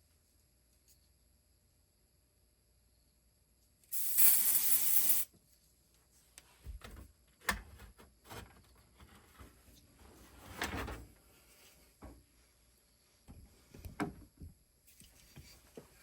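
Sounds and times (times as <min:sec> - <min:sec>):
aerosol spray hissing: 0:03.9 - 0:05.3.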